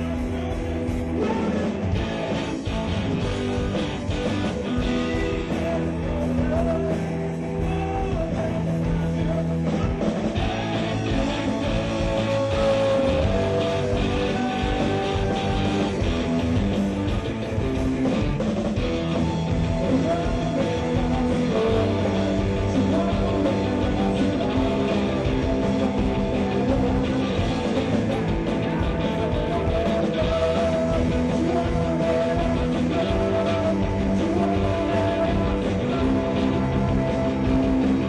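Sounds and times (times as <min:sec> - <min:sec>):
rock music with guitars: 0:00.0 - 0:38.0.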